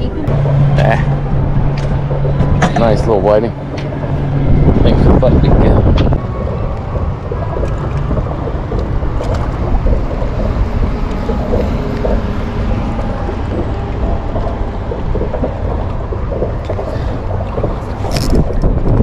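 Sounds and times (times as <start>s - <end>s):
water splashing against hull: 0.0s - 19.0s
wind buffeting microphone: 0.0s - 19.0s.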